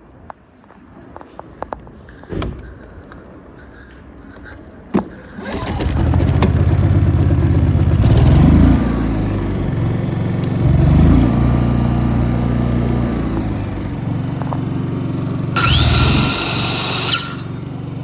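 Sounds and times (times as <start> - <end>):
generator engine running: 5.3 - 18.0.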